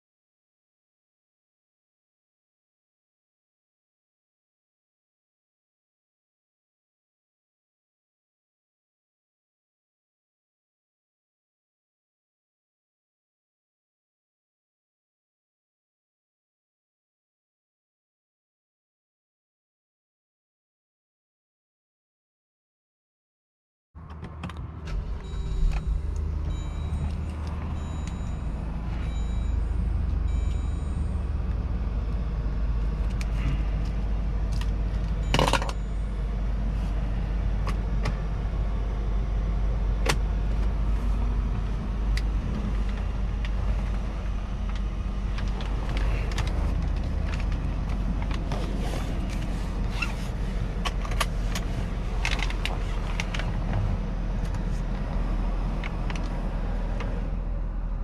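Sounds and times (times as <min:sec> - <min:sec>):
engine and road rumble: 0:24.0 - 0:58.0.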